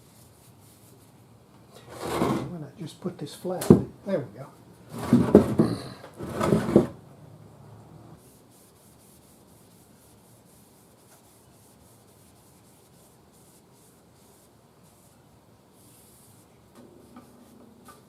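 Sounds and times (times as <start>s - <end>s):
cloth rubbing on wood: 8.2s - 18.0s.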